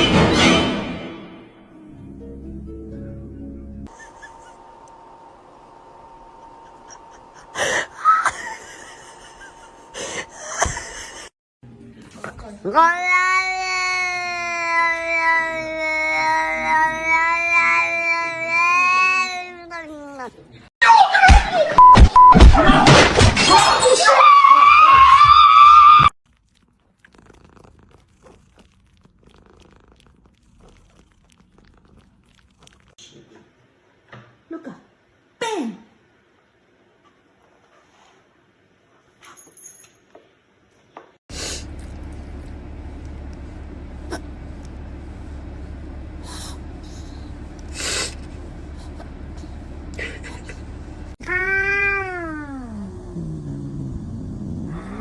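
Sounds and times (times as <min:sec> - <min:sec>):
steady low hum: 0:03.9 - 0:11.3, 0:41.3 - 0:51.2.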